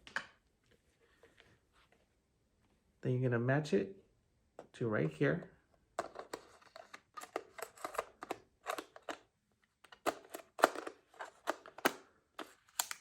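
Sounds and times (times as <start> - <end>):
camera lens clicks and scrapes: 6.0 - 9.2.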